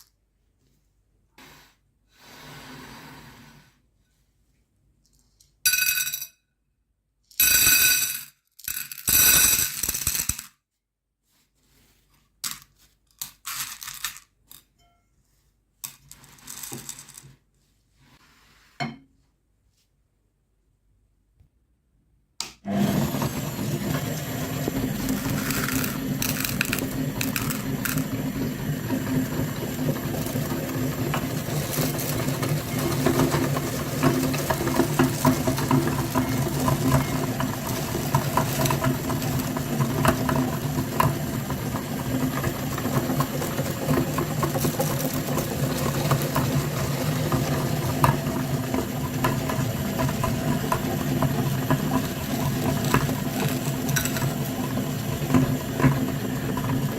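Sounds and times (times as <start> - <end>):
electric grinder motor humming: 22.7 - 39.4.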